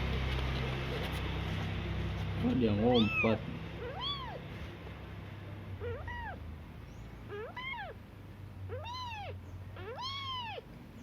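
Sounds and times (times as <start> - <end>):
kitten meowing: 2.8 - 4.4, 5.8 - 6.4, 7.3 - 8.0, 8.7 - 10.7.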